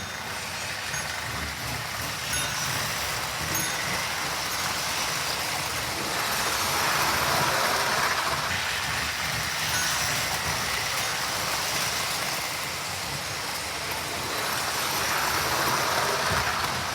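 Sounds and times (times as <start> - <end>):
toy train motors whirring and rattling: 0.0 - 16.9.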